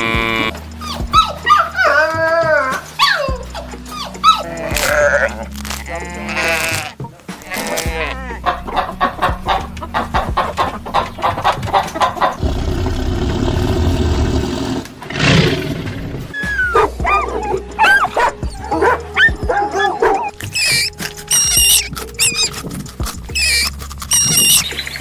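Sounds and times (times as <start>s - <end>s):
background music: 0.0s - 25.0s
dogs barking and yelping: 0.0s - 25.0s
short rising and falling calls: 16.4s - 22.6s.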